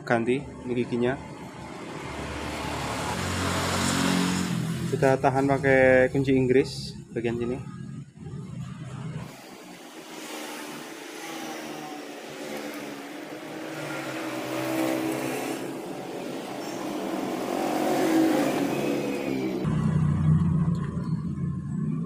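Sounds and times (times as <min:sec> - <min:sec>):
motor humming: 0:09.2 - 0:19.7.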